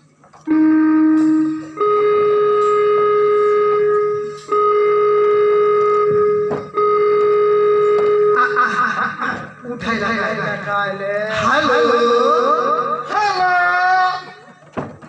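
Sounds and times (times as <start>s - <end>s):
held musical tones: 0.4s - 10.0s.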